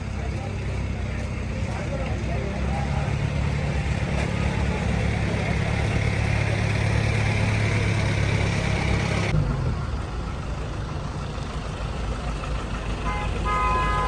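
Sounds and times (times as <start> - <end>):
street traffic: 0.0 - 14.0
vehicle engine idling: 0.0 - 14.0
vehicle horn: 13.0 - 14.0.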